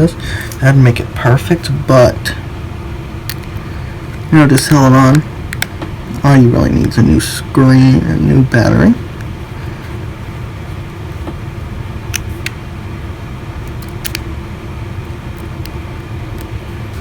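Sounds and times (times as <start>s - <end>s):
low background hum: 0.0s - 17.0s.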